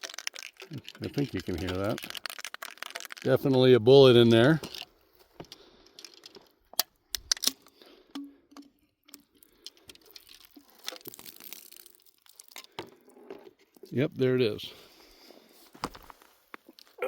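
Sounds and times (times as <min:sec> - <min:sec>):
bullet clicking inside can: 0:00.0 - 0:03.7, 0:04.6 - 0:13.0
thin metal can crinkling: 0:00.0 - 0:14.0.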